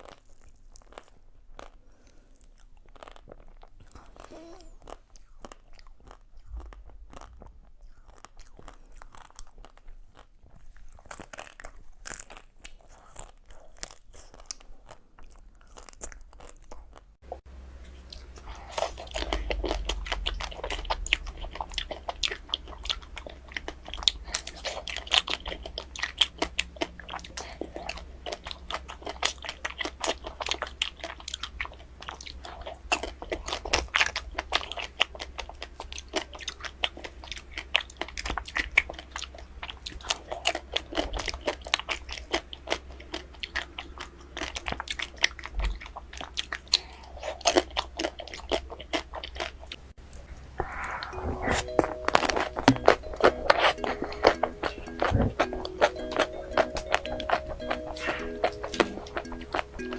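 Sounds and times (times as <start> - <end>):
ice cream crunching and chewing: 0.0 - 49.9, 51.6 - 59.9.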